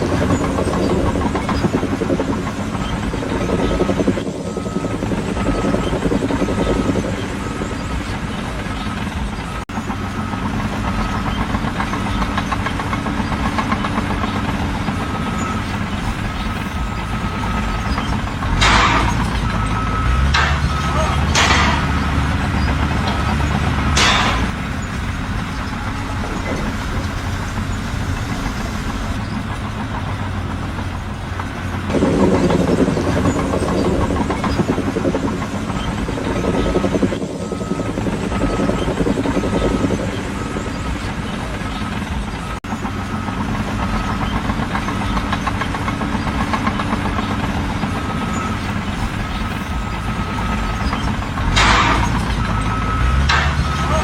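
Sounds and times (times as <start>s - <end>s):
heavy engine running: 0.0s - 54.0s
voices: 19.5s - 29.8s, 53.3s - 54.0s.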